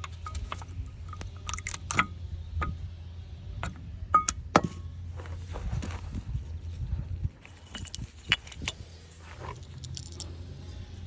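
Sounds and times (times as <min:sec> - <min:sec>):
steady low hum: 0:00.0 - 0:11.0
metallic clicks and clinks: 0:09.5 - 0:10.5.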